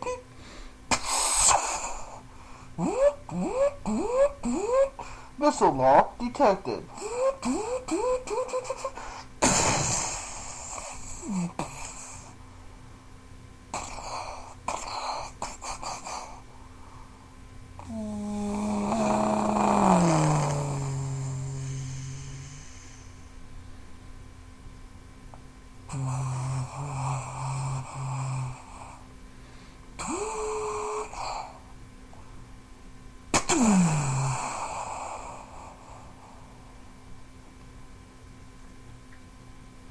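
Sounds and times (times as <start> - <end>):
hissing bursts: 0.9 - 2.0, 9.4 - 11.0.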